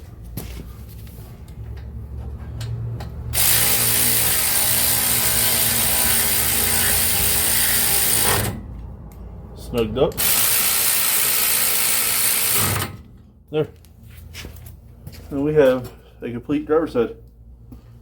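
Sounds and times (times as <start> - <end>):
ratchet running: 3.3 - 8.6, 10.1 - 13.0.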